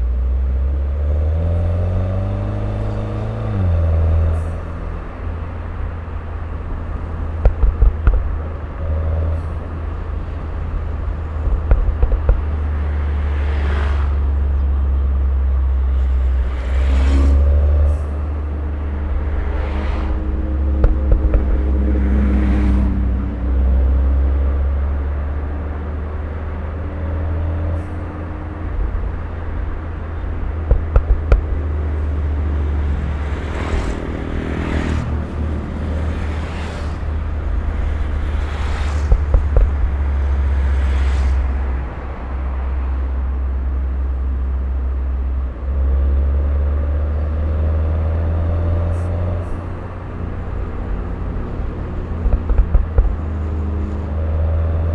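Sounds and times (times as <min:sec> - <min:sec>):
car engine drone: 0:00.0 - 0:54.9
sharp exhaust pops: 0:06.8 - 0:09.6, 0:10.2 - 0:13.0, 0:20.6 - 0:23.0, 0:30.3 - 0:35.1, 0:37.2 - 0:41.0, 0:52.0 - 0:53.6.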